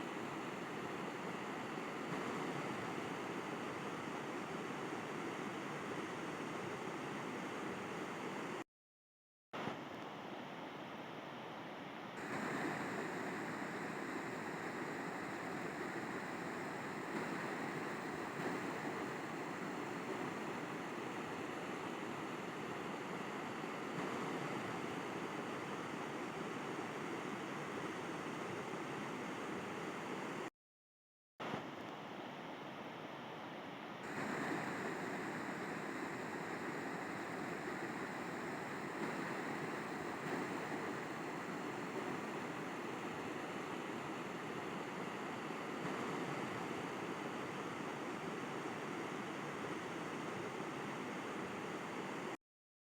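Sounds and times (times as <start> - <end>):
river water rushing: 12.2 - 30.4, 34.1 - 52.3.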